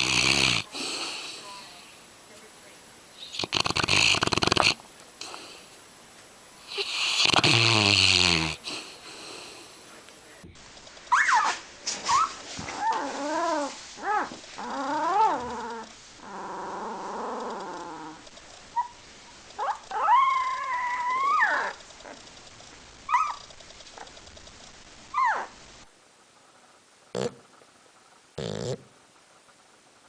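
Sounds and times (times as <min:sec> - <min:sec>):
dog whining and yelping: 0:11.1 - 0:19.0, 0:19.6 - 0:22.2, 0:23.1 - 0:24.1, 0:25.1 - 0:25.6
dog howling: 0:12.2 - 0:18.2, 0:19.6 - 0:21.8.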